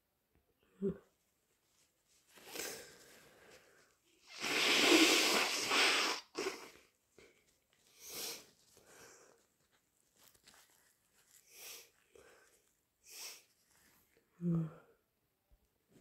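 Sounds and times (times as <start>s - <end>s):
person blowing nose: 2.4s - 3.0s, 4.2s - 6.9s, 7.9s - 8.5s, 13.1s - 13.5s
faint snuffles: 4.3s - 6.8s.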